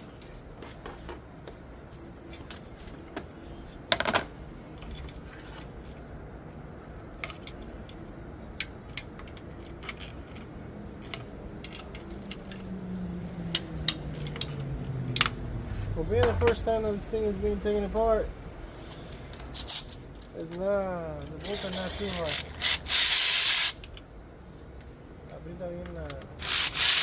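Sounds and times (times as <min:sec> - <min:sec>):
hand tools clicking on metal: 0:08.6 - 0:15.4, 0:21.2 - 0:24.0.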